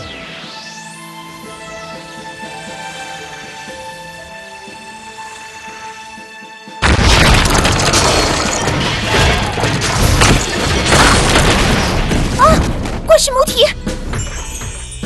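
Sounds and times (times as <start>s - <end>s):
soft background music: 0.0s - 6.8s.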